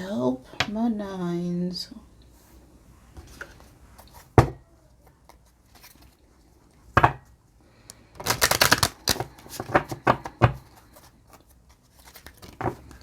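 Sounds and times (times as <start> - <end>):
cards shuffling and snapping: 7.9 - 13.0
cards slapping: 8.2 - 11.4, 12.0 - 13.0.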